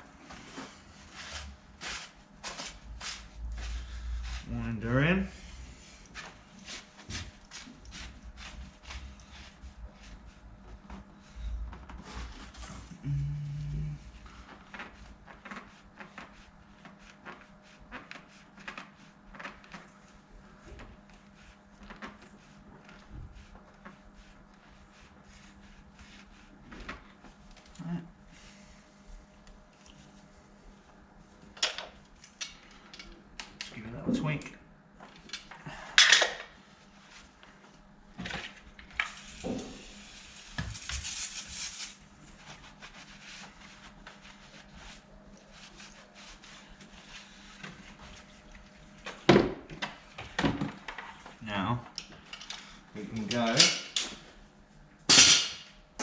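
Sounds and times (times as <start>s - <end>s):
rubbing and rustling: 0.1s - 12.8s, 14.2s - 27.6s, 38.6s - 49.0s.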